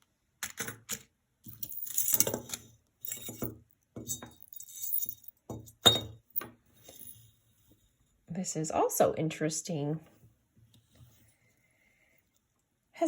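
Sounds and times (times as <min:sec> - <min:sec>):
metal jewelry jingling and clinking: 0:00.6 - 0:07.4.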